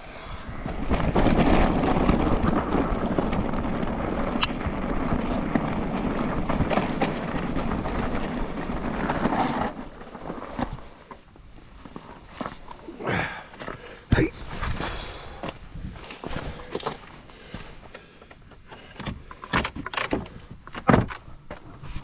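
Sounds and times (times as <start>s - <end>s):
bike tyres on stony track: 0.0s - 19.3s
wind buffeting microphone: 0.1s - 9.2s, 14.4s - 16.7s.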